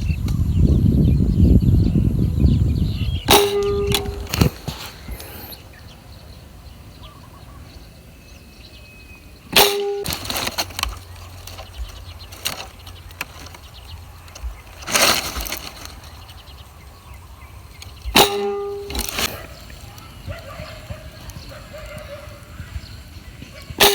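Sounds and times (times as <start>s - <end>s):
short rustling: 3.3s - 5.7s, 9.6s - 16.9s, 17.7s - 21.0s.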